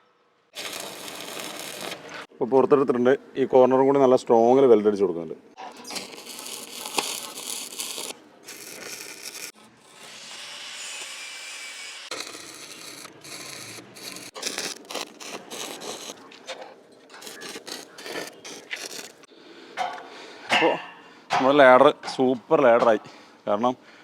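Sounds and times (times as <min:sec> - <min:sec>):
metal scraping and rubbing: 0:05.8 - 0:20.2.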